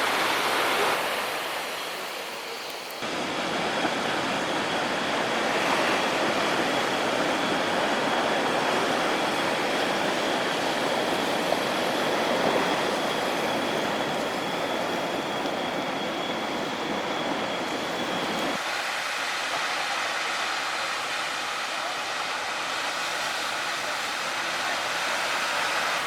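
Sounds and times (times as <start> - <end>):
ocean surf breaking: 0.0 - 17.4.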